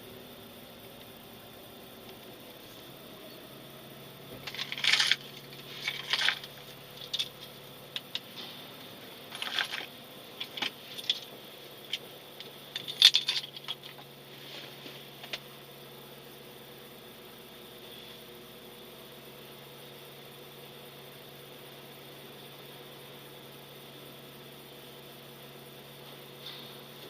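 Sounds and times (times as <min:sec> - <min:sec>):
faint steady hum: 0:00.0 - 0:27.0
metallic clinks and rattles: 0:04.4 - 0:08.3, 0:09.3 - 0:14.0.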